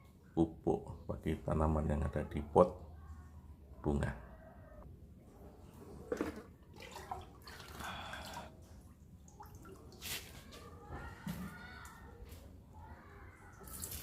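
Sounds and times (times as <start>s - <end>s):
water splashing and dripping: 6.2s - 10.6s, 13.5s - 14.0s.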